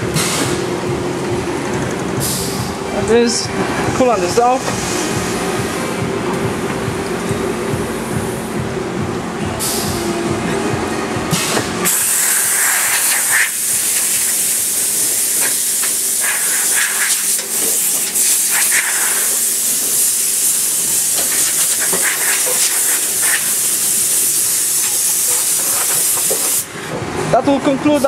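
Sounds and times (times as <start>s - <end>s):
machine running noise: 0.0s - 28.0s
strong high hiss: 11.3s - 26.8s.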